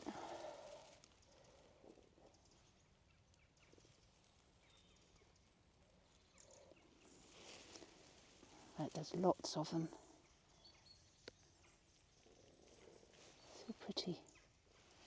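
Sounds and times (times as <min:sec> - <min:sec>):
faint woodland ambience: 0:00.0 - 0:15.0.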